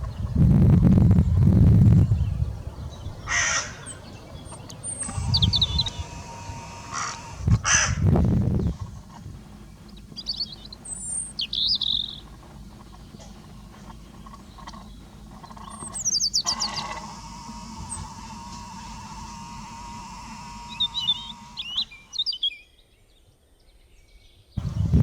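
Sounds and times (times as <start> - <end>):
small birds chirping: 0.0 - 23.0, 24.6 - 25.0
crows cawing: 3.2 - 8.0, 8.8 - 20.7.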